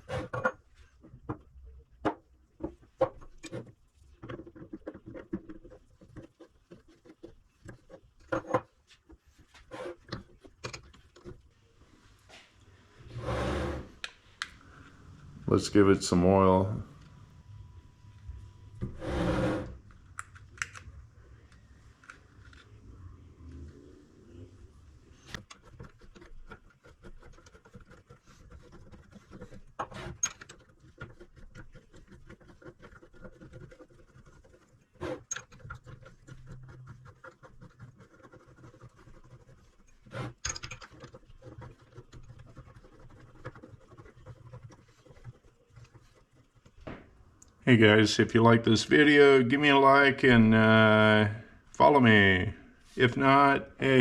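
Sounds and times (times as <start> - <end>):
faint scratching: 3.4 - 8.2, 8.8 - 14.0, 18.0 - 19.9, 21.4 - 46.8.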